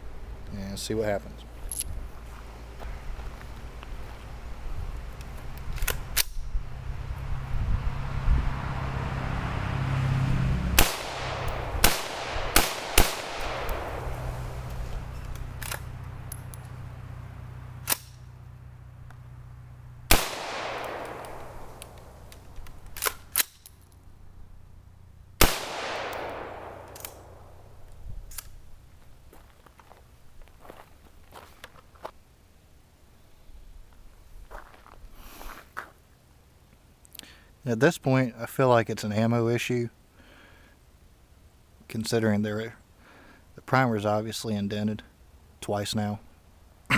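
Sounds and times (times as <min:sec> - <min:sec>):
rifle shots echoing: 0:10.8 - 0:15.1, 0:20.1 - 0:22.3, 0:25.4 - 0:27.9
quiet clicks: 0:20.8 - 0:24.0.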